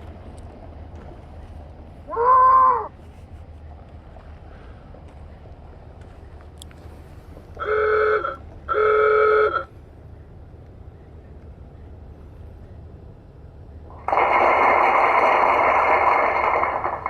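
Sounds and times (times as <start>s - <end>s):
car horn blasts: 7.6s - 9.7s
loud rushing noise: 13.9s - 17.0s.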